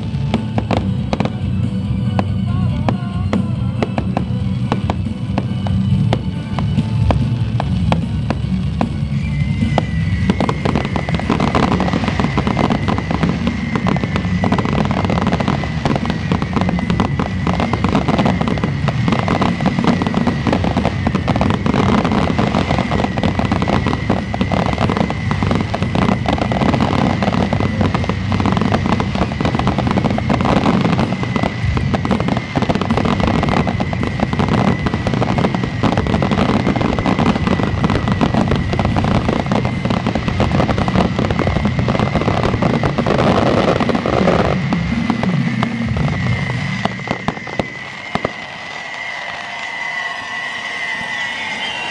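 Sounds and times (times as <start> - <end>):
fireworks bangs and crackling: 0.0 - 51.9
high whistle-like tone: 8.8 - 41.0, 45.4 - 51.9.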